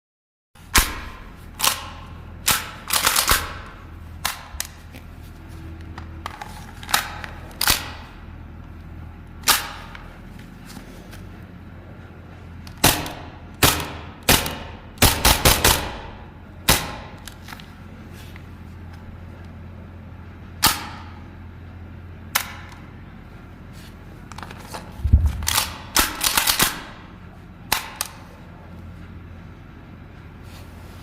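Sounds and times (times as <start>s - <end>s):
airsoft pistol shots: 0.7s - 4.5s, 12.8s - 17.2s, 20.6s - 21.2s.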